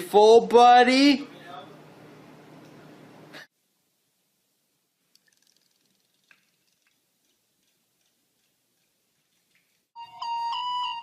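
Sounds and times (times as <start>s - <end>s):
faint clicks and ticks: 5.1s - 10.0s.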